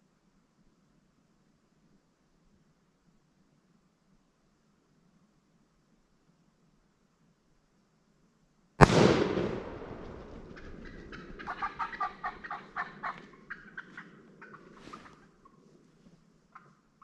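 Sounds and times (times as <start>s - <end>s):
shotgun blast: 8.8s - 11.5s
wild turkey calls: 9.9s - 17.0s.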